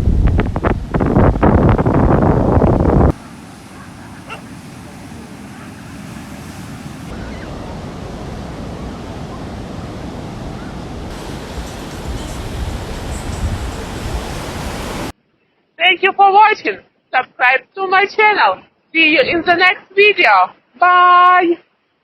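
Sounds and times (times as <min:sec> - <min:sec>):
sea surf washing onto beach: 0:00.0 - 0:15.1.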